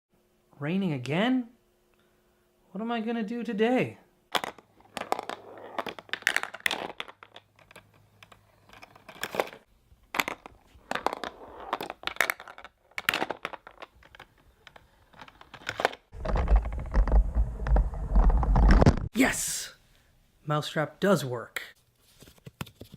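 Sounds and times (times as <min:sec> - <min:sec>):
small objects clicking and rustling: 0:04.3 - 0:18.9.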